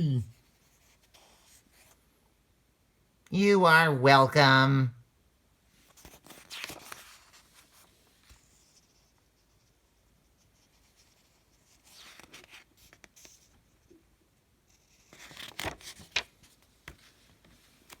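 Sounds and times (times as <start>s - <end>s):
paper rustling: 5.8s - 9.2s, 10.6s - 13.7s, 14.7s - 18.0s.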